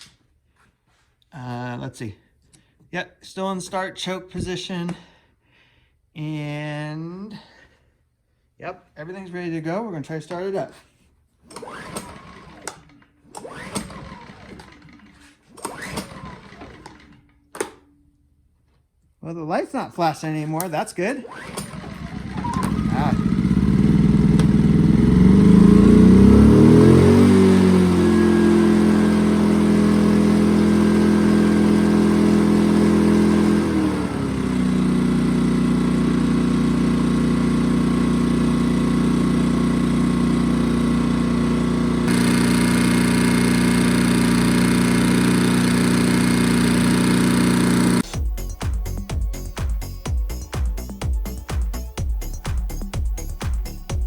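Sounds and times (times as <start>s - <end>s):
generator engine running: 21.3s - 54.0s.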